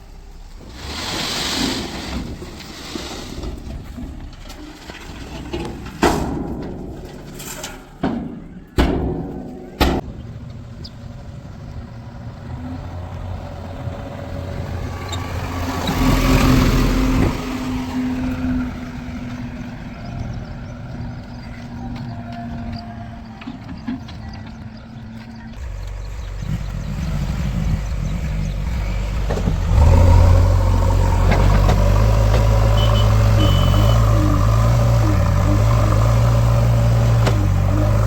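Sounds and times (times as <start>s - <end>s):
loud metallic knocks: 8.0s - 10.1s
diesel engine running: 10.1s - 38.0s.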